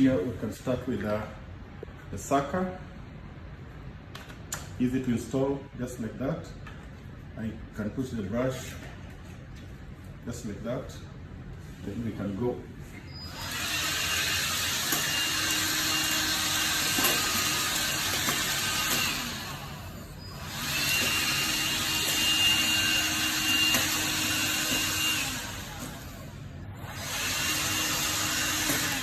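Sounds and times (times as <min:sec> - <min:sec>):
handheld vacuum cleaner whine: 0:13.2 - 0:29.0.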